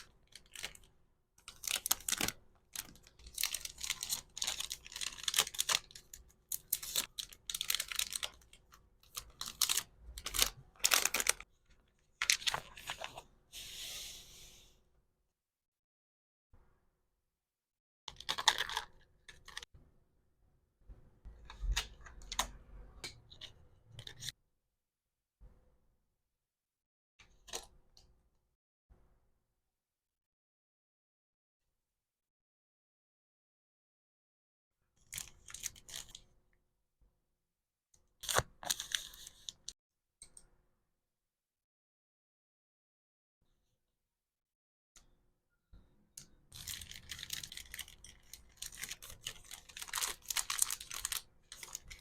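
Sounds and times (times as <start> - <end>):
packaging crinkling: 0.0 - 11.5, 46.5 - 52.0.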